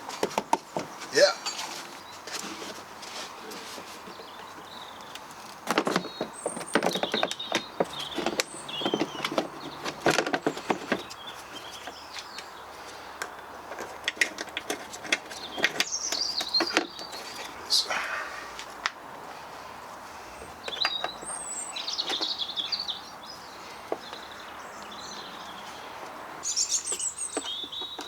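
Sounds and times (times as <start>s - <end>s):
hand tools and metal parts clicking: 4.6s - 17.6s.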